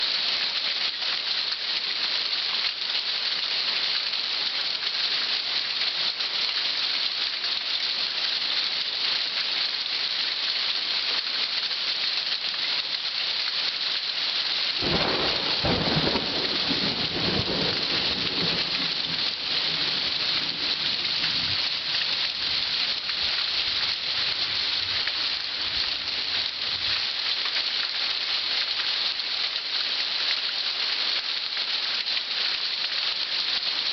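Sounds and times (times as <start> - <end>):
rain: 0.0 - 33.9
low rumble of thunder: 14.8 - 21.6.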